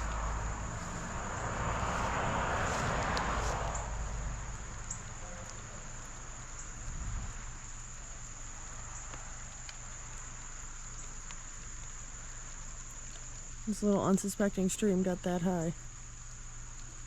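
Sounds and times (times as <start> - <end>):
low rumble: 0.0 - 4.8
insects droning: 0.0 - 17.0.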